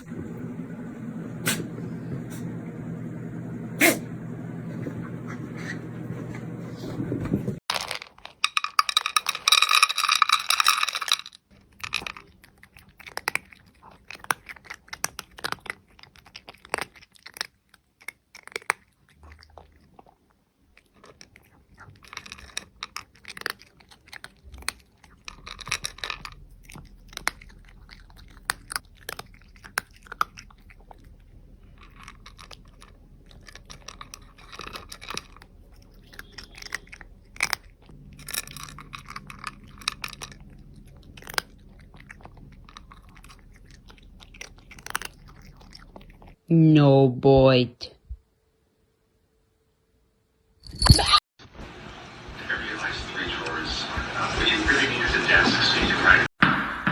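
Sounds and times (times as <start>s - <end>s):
pet chewing crunchy food: 11.5s - 46.4s.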